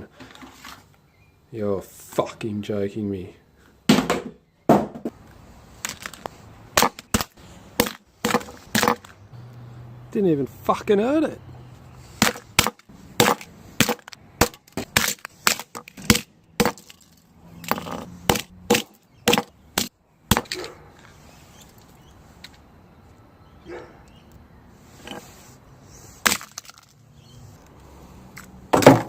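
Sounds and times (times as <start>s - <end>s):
object being smashed: 12.2s - 20.6s, 26.2s - 26.9s.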